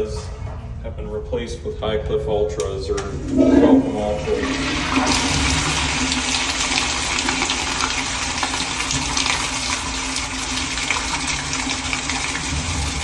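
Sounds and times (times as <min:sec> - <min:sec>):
toilet refilling with running water: 0:03.0 - 0:13.0.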